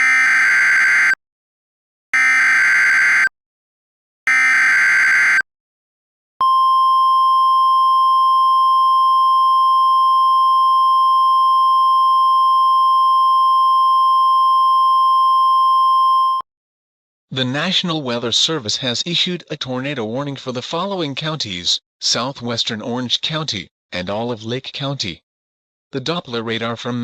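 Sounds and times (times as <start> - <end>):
steady single-pitch attention tone: 6.4 - 16.4.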